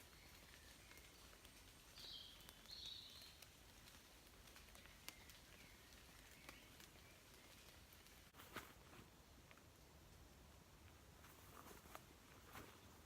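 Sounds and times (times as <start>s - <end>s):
raindrops dripping: 0.0s - 8.4s.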